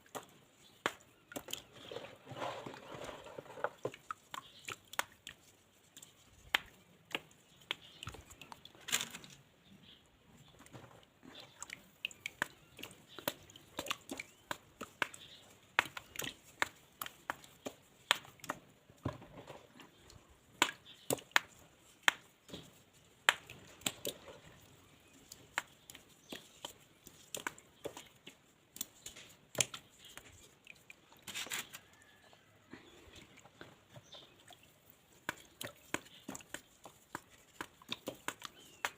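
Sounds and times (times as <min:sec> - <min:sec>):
dried mud crunching and crumbling: 0:00.0 - 0:09.4, 0:31.2 - 0:38.9.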